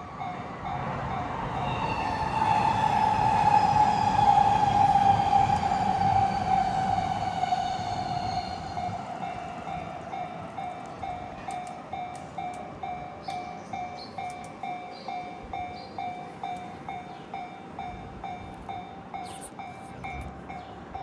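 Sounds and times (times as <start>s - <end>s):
rumble of passing train: 0.0s - 21.0s.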